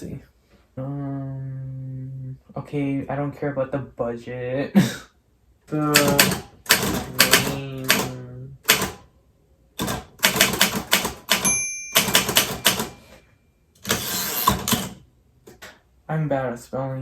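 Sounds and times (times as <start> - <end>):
typewriter keys clacking: 6.0 - 9.0, 9.8 - 13.1, 13.8 - 15.6
typewriter bell ring: 11.2 - 13.2.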